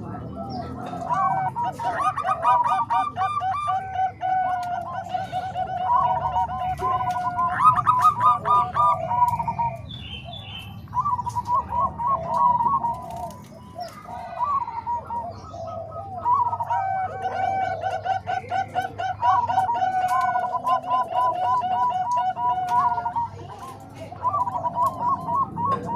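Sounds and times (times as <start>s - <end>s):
doves cooing: 0.0s - 25.9s.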